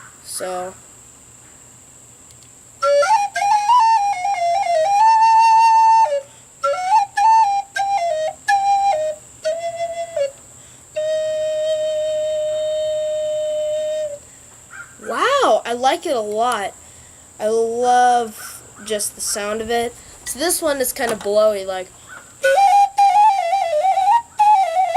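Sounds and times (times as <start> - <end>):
plastic flute playing: 2.8 - 14.2, 22.4 - 24.9.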